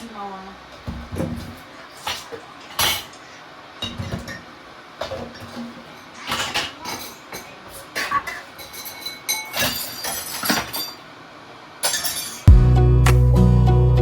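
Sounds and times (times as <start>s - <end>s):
dishes and cutlery clinking: 1.1s - 3.2s, 3.8s - 11.1s, 11.8s - 12.5s.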